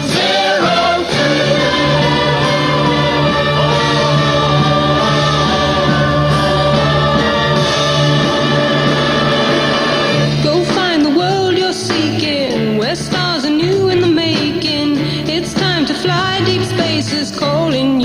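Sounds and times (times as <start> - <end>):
choir singing held chords: 0.0 - 11.1.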